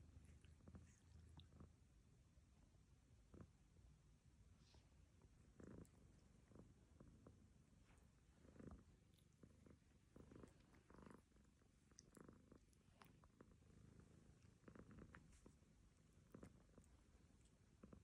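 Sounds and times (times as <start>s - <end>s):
cat snoring softly: 4.6s - 18.0s
cat licking fur: 7.7s - 18.0s.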